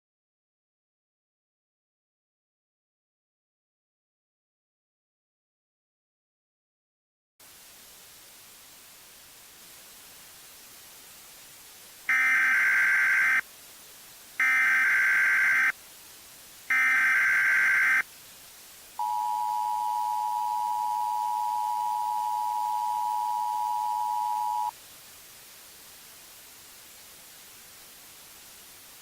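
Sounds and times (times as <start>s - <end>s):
two-tone attention signal: 19.0s - 24.7s.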